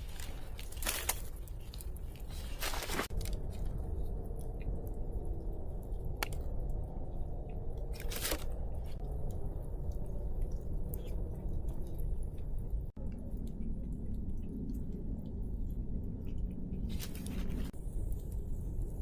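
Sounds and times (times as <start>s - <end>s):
crunching crinkling handling noises: 0.0s - 3.7s
low background rumble: 0.0s - 19.0s.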